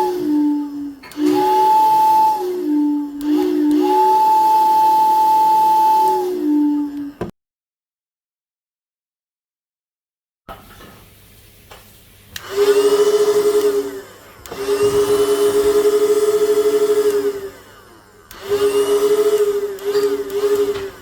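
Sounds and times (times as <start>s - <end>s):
steam whistle blasts: 0.0s - 7.2s, 12.4s - 17.5s, 18.3s - 20.8s.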